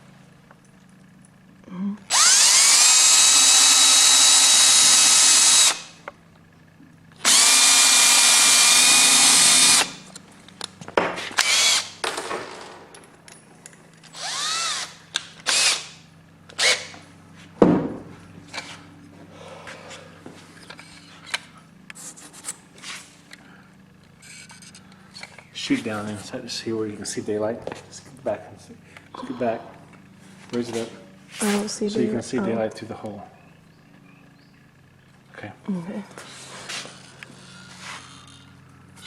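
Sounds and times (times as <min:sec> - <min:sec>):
power drill boring into wood: 0:02.1 - 0:05.9, 0:07.2 - 0:10.0, 0:11.4 - 0:11.9, 0:14.1 - 0:16.0, 0:16.6 - 0:16.9.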